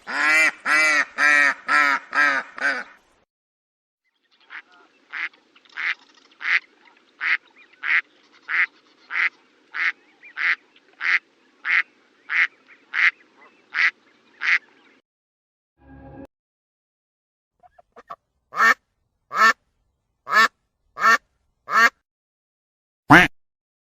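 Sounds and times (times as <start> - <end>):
duck quacking: 0.0 - 3.0, 4.5 - 14.7, 17.6 - 19.6, 20.3 - 22.0, 23.1 - 23.3.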